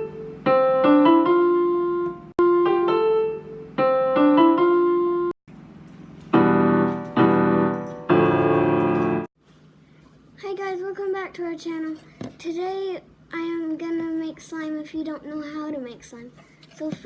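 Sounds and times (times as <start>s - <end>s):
loud held piano chords: 0.0s - 5.4s, 6.3s - 9.3s
piano melody of single notes: 0.0s - 5.4s, 6.3s - 9.3s.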